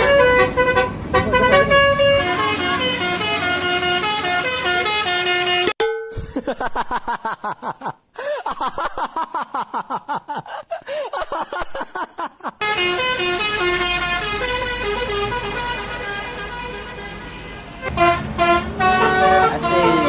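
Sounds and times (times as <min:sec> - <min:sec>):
multi-tone bus horn melody: 0:00.0 - 0:05.8, 0:12.6 - 0:20.0.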